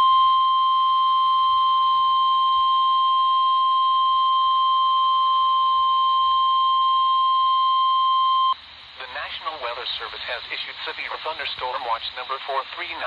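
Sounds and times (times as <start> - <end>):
weather radio alarm tone: 0.0 - 8.6.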